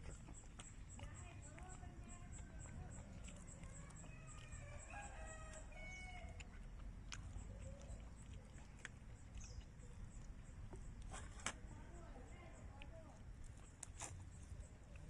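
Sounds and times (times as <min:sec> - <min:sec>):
rooster crowing: 0:04.6 - 0:06.4.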